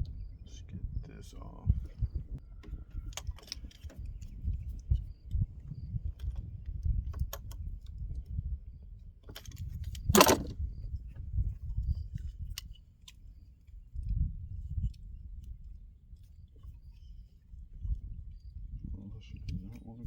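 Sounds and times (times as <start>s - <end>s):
metal tools clinking: 9.4s - 10.6s.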